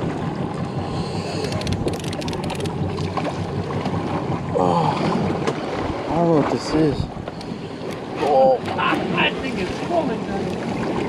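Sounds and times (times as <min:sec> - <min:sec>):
boat engine idling: 0:00.0 - 0:11.0
sharp clicks: 0:01.4 - 0:02.8
wind on microphone: 0:05.0 - 0:07.4.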